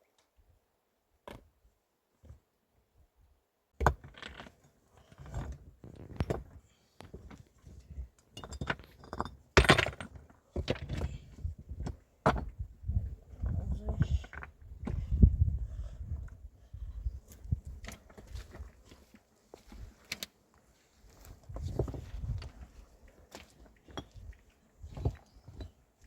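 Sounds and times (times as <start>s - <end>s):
hard objects knocking and scraping: 8.3s - 11.2s.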